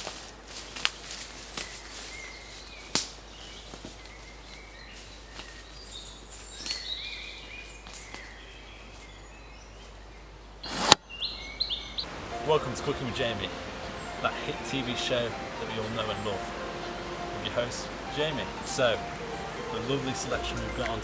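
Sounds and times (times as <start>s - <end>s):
faint birds chirping: 0.0s - 21.0s
steady hiss: 10.6s - 11.0s, 12.1s - 21.0s.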